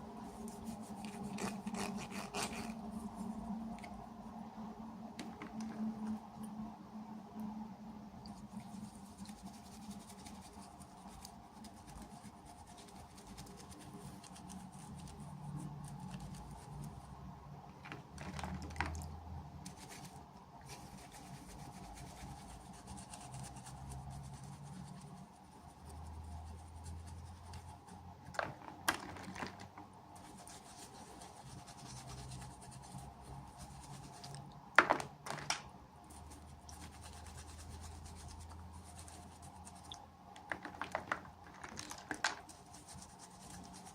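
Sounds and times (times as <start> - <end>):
hands handling plastic packaging: 28.3 - 29.8, 40.4 - 42.6.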